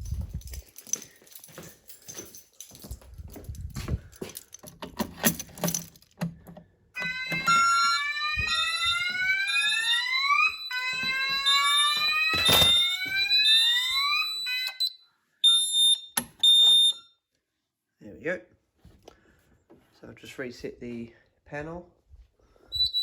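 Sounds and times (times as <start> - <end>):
fire alarm whoop: 7.0 - 17.1, 22.7 - 23.0.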